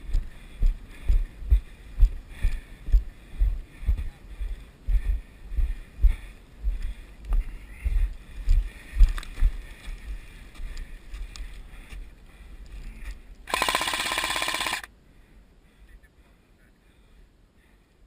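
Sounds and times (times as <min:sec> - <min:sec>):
toy gun firing rapid clicks: 0:13.5 - 0:14.9.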